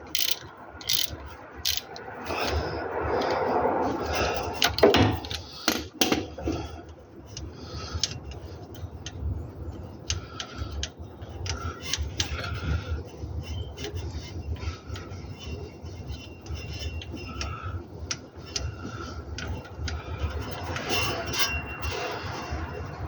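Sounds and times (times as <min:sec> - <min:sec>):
metal tools clinking and scraping: 0:00.1 - 0:02.0, 0:20.5 - 0:22.2.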